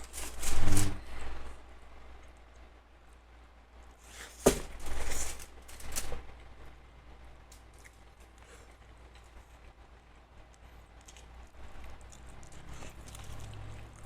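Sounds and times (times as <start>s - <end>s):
low steady hum: 0.0s - 14.0s
person eating: 7.6s - 14.0s.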